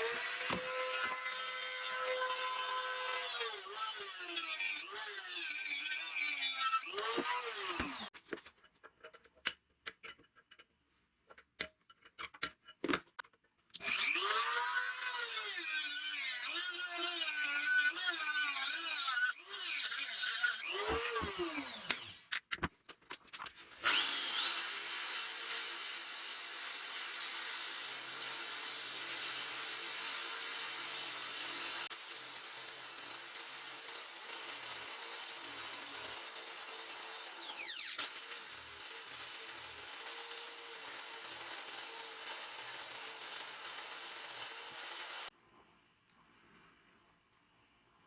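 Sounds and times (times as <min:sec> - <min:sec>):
electric rotary tool whining: 0:00.0 - 0:08.1, 0:13.8 - 0:22.2, 0:23.8 - 0:45.3.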